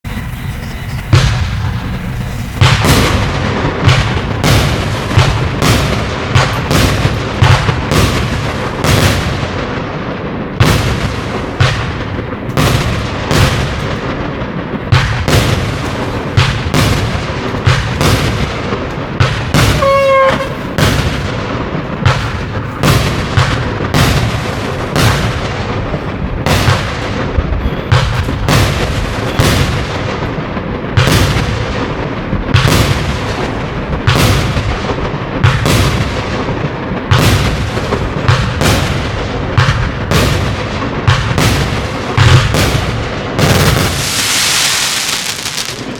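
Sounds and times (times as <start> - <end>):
short whistling tone: 0.1 - 1.1
firework aerial bursts: 0.1 - 36.6, 37.2 - 45.9
firework launch thumps: 43.4 - 45.9.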